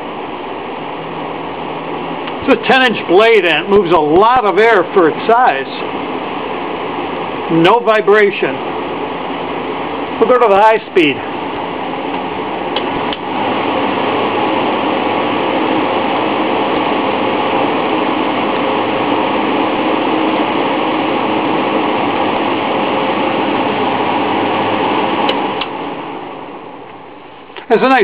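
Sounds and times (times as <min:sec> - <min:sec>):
electric fan running: 0:00.0 - 0:28.0
fan switch click: 0:12.1 - 0:13.3, 0:25.2 - 0:25.8.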